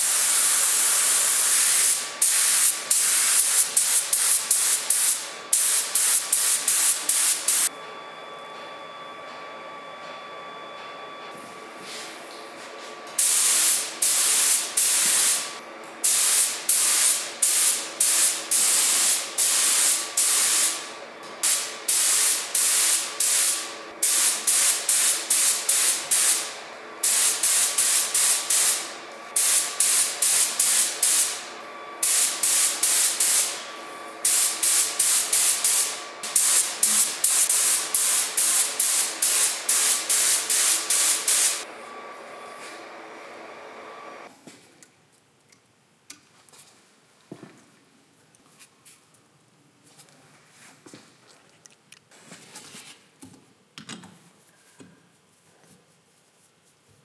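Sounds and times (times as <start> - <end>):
spray nozzle hissing bursts: 0.0 - 7.7, 13.2 - 20.8, 21.4 - 28.8, 29.4 - 31.4, 32.0 - 33.6, 34.2 - 41.6.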